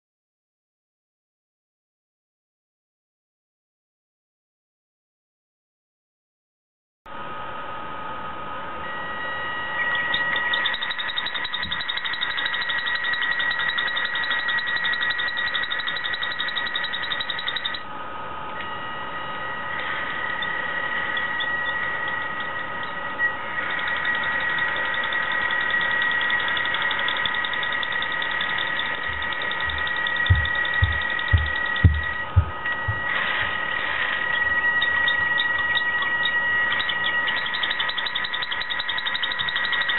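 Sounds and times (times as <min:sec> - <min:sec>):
electric motor whine: 0:07.2 - 0:39.9
fast ticking rattle: 0:10.0 - 0:17.8, 0:19.8 - 0:23.0, 0:23.6 - 0:39.9.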